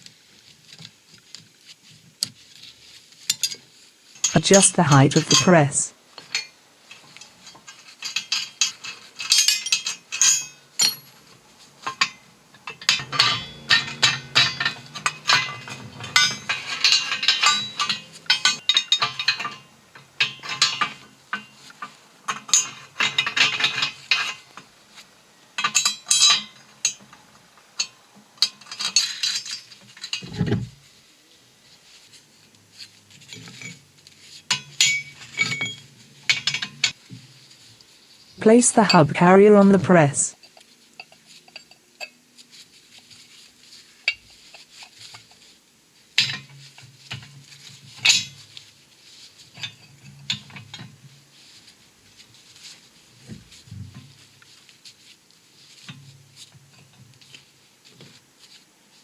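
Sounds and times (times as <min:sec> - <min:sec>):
steel parts clinking and clanking: 0:03.3 - 0:24.7, 0:25.6 - 0:27.2, 0:27.8 - 0:30.7, 0:32.8 - 0:37.0, 0:46.2 - 0:48.7, 0:49.5 - 0:51.0
metal knocks and rattles: 0:11.9 - 0:21.0.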